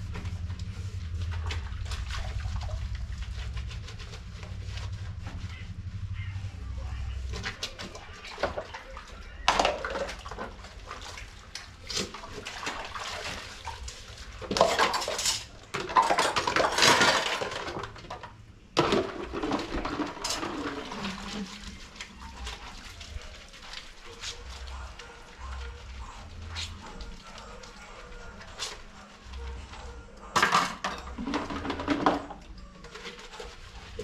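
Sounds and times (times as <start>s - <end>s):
water splashing and pouring: 0.0s - 4.8s, 7.3s - 18.0s, 18.8s - 29.0s.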